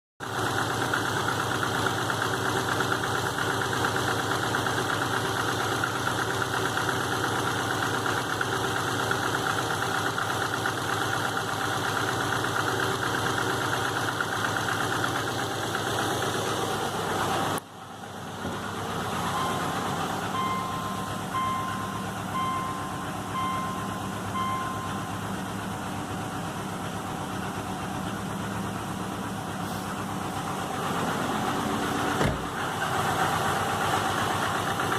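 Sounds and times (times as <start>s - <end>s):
car engine idling with a knock: 18.2s - 19.5s, 32.1s - 32.8s
short electronic beeps: 19.1s - 25.3s.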